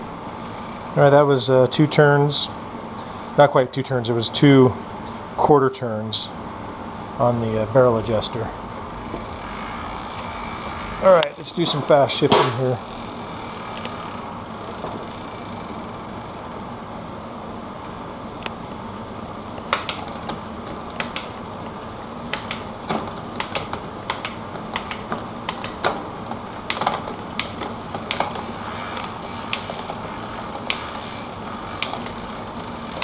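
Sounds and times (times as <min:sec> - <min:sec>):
bicycle chain whirring: 0:00.0 - 0:01.1, 0:08.1 - 0:16.7, 0:19.3 - 0:33.0.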